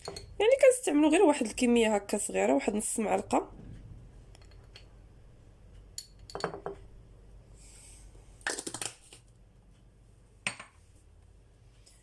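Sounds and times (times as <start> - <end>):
metal spoon clinking on dish: 0.0 - 0.3, 6.0 - 6.8.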